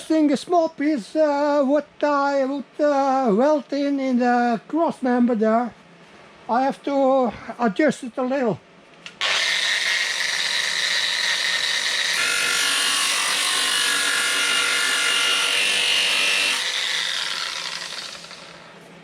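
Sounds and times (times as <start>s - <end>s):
electric grinder on steel: 9.2s - 18.7s.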